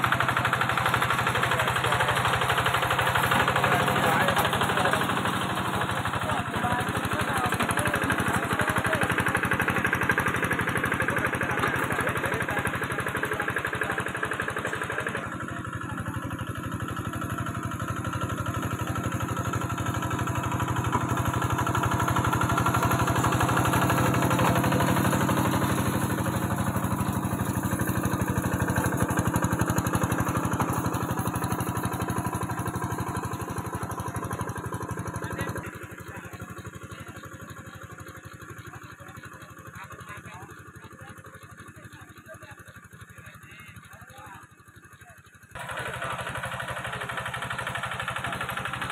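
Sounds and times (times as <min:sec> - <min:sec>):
tillage machine engine running: 0:00.0 - 0:48.9.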